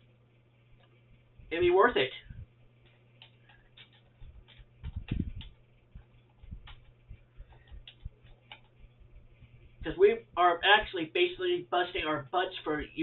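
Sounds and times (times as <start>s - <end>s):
steady low hum: 0.0s - 13.0s
light clicks and ticks: 2.8s - 8.8s.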